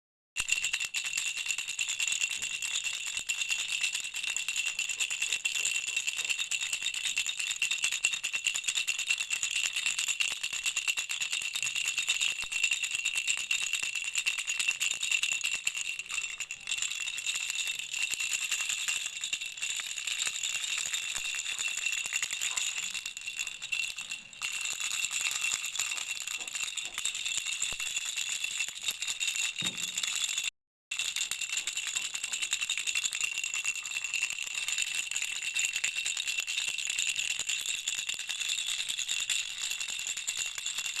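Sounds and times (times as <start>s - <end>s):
baby rattle shaken: 0.4s - 41.0s.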